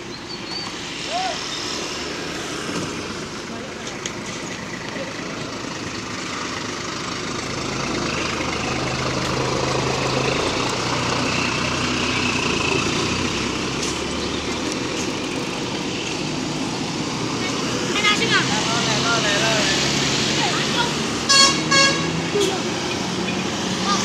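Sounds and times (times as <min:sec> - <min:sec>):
diesel bus engine running: 0:00.0 - 0:24.0.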